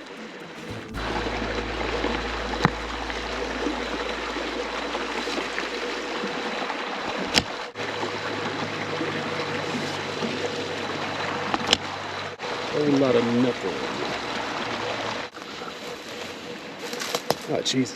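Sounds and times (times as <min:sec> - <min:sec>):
low rumble: 0:00.7 - 0:07.6.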